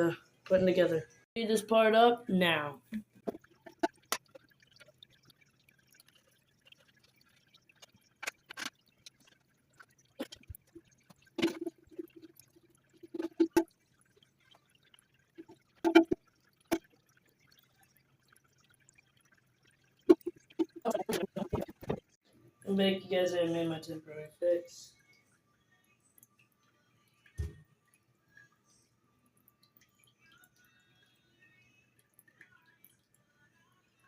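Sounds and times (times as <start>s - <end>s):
water in toilet tank: 2.6s - 22.8s
toilet tank parts clicking: 7.8s - 9.2s.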